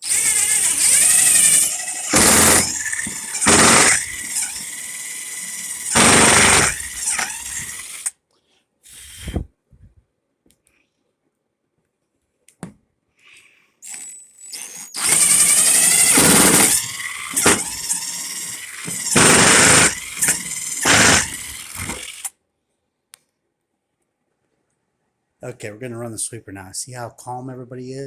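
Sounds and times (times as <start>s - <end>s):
power drill whining: 0.0s - 8.1s, 13.8s - 22.3s.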